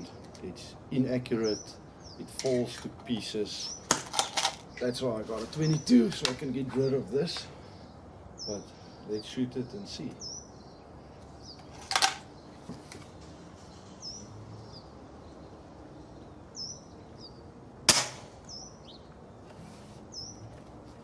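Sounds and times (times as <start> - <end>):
bird chirping: 0.0 - 4.0, 4.6 - 17.6, 18.3 - 20.6
air rifle crack: 17.9 - 18.5
air rifle shot: 17.9 - 18.5.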